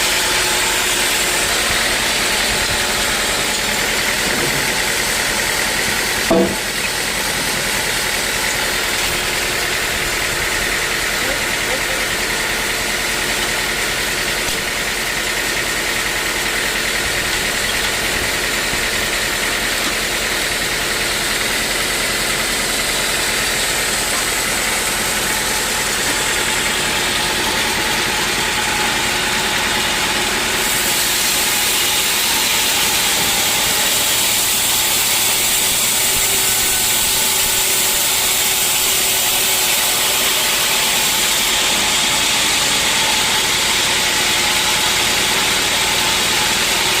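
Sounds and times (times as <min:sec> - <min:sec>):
sawmill machinery running: 0:00.0 - 0:47.0.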